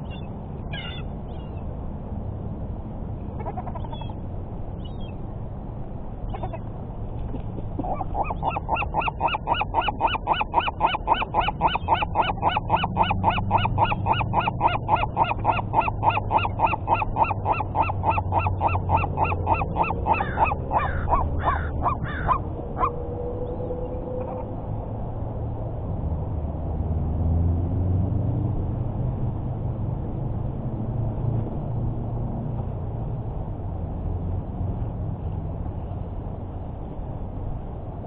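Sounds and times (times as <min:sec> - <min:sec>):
bird calling: 0:00.0 - 0:01.6, 0:03.4 - 0:04.2, 0:06.3 - 0:06.7, 0:07.8 - 0:23.0.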